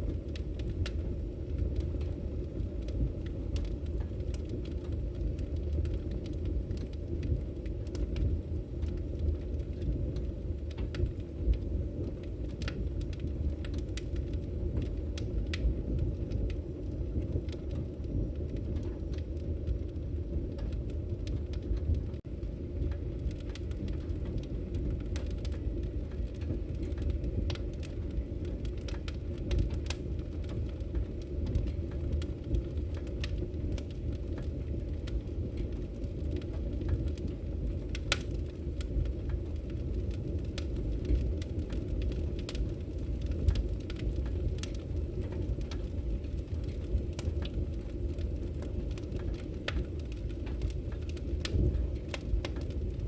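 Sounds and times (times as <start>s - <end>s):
fire popping and snapping: 0.0s - 53.0s
wood fire crackling: 0.0s - 53.0s.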